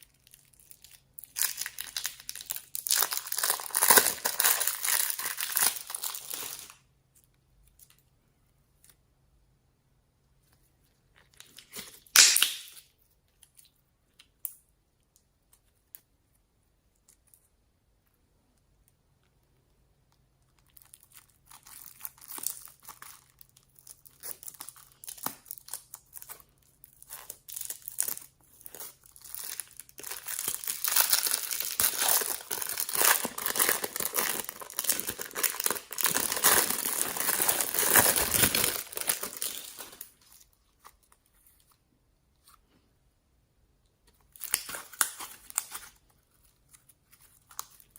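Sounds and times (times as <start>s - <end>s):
slime crinkling and crackling: 0.0s - 6.8s, 20.4s - 41.2s.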